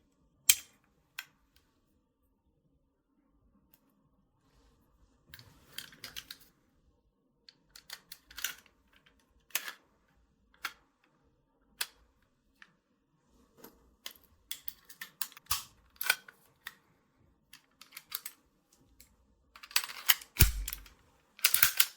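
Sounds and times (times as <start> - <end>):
toy blaster parts clicking and rattling: 14.6 - 16.3, 19.6 - 21.9.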